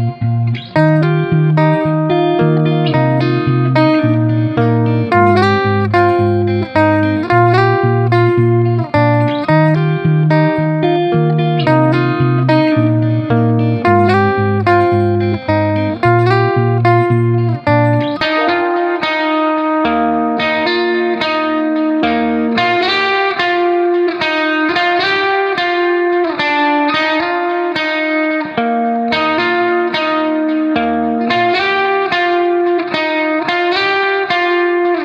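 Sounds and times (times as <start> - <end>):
bass line: 0.0 - 18.4
plucked string instrument: 0.0 - 35.0.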